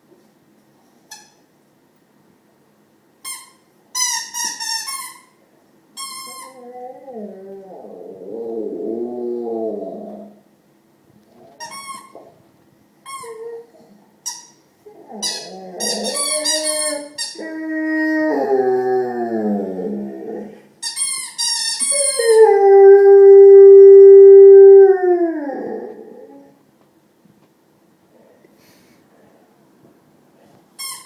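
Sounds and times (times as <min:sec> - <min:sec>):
dog howling and whining: 0:06.4 - 0:10.4, 0:13.2 - 0:14.0, 0:14.9 - 0:20.6, 0:21.9 - 0:26.6.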